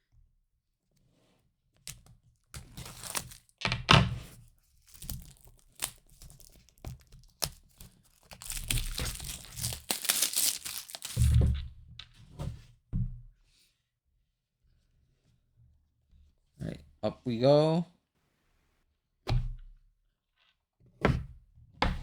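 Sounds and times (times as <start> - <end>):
plastic film crinkling and tearing: 1.9 - 3.6, 4.8 - 11.4.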